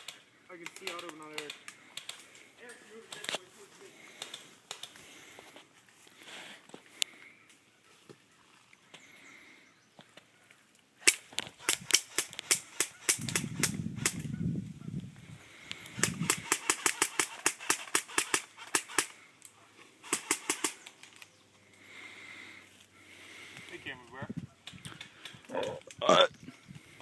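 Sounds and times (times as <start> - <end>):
airsoft guns firing: 16.0 - 19.2, 20.0 - 20.9.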